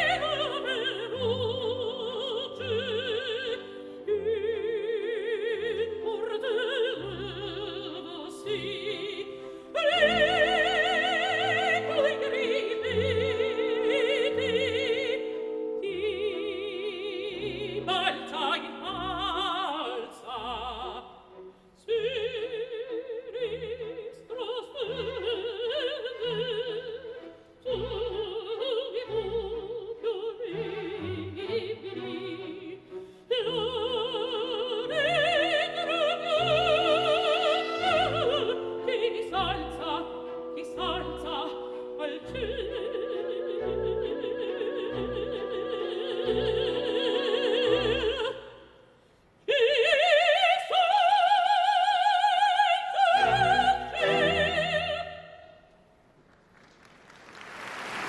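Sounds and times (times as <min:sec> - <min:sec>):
operatic voice singing: 0:00.0 - 0:48.6, 0:49.5 - 0:55.4
orchestra accompaniment: 0:23.4 - 0:48.3, 0:53.0 - 0:55.2.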